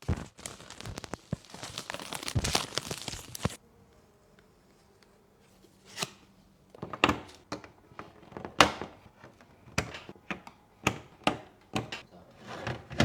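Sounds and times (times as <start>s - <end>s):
computer parts knocking and clicking: 6.8s - 12.0s.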